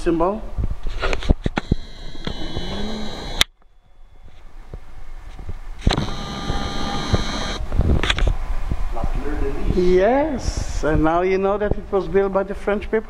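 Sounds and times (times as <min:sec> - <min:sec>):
room noise: 0:00.0 - 0:13.0
machine hum with whining tones: 0:01.5 - 0:08.2.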